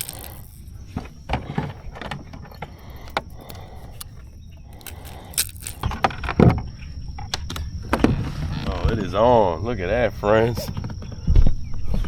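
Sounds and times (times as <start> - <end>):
fishing tackle clicking and rattling: 0.0 - 0.8, 1.6 - 6.0.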